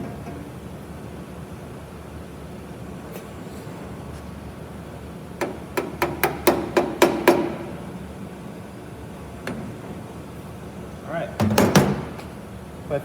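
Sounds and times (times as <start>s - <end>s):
hammer tapping on steel panel: 5.4s - 7.7s.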